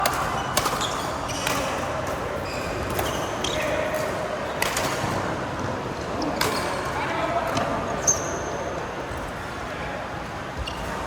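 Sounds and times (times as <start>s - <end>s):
rackets hitting shuttlecock: 0.0s - 3.2s.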